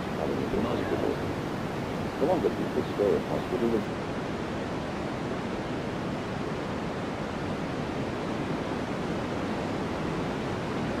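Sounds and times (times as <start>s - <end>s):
white noise rushing: 0.0s - 3.9s.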